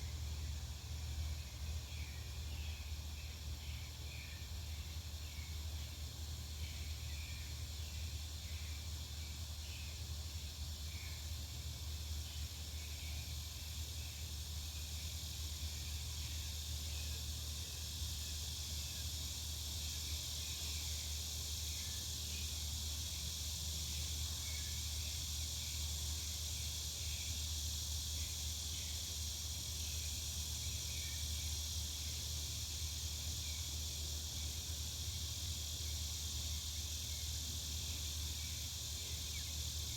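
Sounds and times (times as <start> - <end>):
insects buzzing: 0.0 - 39.9.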